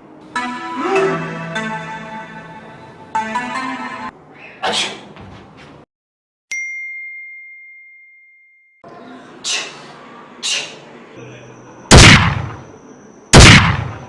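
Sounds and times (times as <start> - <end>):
bell-like ding: 6.5 - 8.8
loud booming blasts: 11.9 - 12.6, 13.4 - 14.0.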